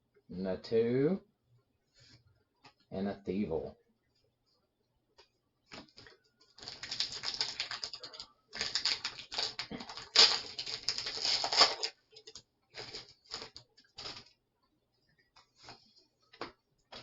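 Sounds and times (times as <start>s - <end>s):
foil wrapper crinkling: 5.7s - 14.4s.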